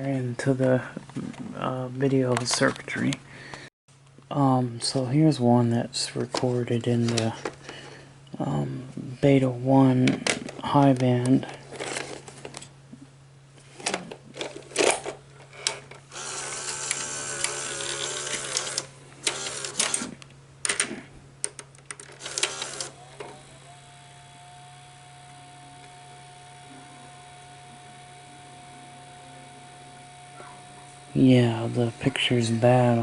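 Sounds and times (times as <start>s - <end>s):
faint two-tone hum: 0.0s - 33.0s
tape mechanism clicks and clunks: 13.8s - 32.9s
motor whirring: 16.1s - 20.2s, 22.0s - 33.0s.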